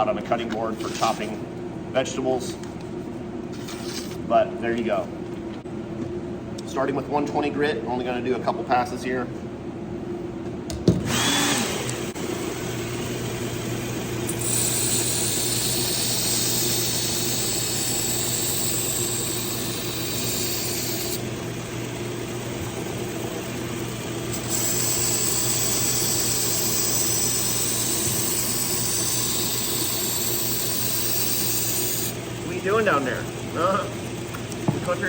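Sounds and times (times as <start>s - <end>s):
belt sharpener running: 11.0s - 35.0s.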